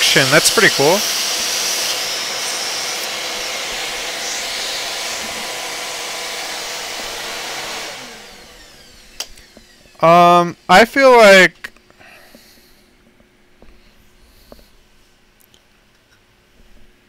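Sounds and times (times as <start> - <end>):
vacuum cleaner running: 0.0 - 10.6.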